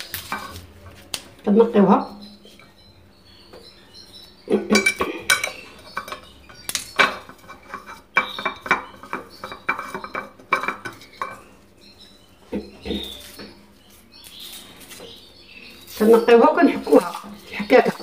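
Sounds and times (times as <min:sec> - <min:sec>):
metal utensils and dishes clinking: 0:00.0 - 0:01.0, 0:04.7 - 0:11.5.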